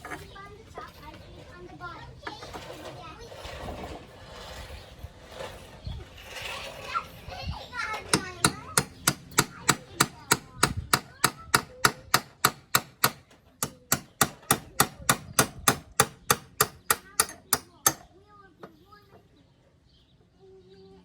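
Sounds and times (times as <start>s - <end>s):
hammer striking: 8.1s - 18.1s.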